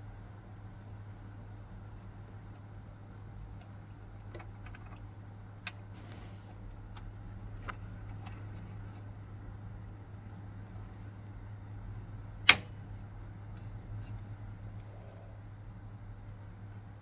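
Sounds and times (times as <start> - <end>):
steady low hum: 0.0 - 17.0
clicks handling computer parts: 6.7 - 9.1, 12.4 - 12.9.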